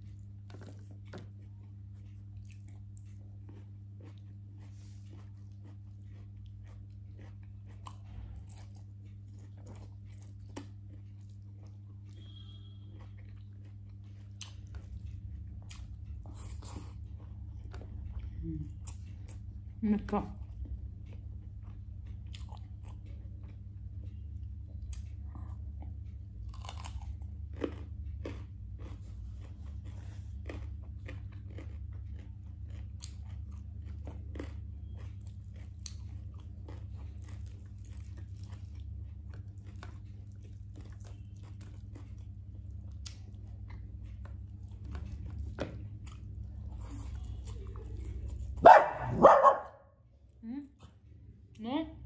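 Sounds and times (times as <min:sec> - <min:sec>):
chewing crunchy fried chicken: 0:00.0 - 0:51.6
steady low hum: 0:00.0 - 0:52.0
dog barking: 0:48.6 - 0:49.9.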